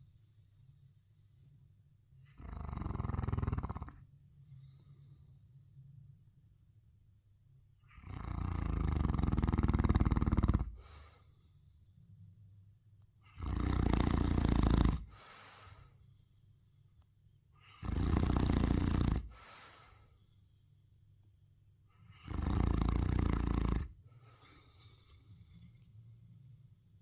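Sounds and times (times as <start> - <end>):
dog snoring: 2.2 - 4.1, 7.8 - 11.2, 13.2 - 15.9, 17.6 - 20.0, 21.9 - 25.9.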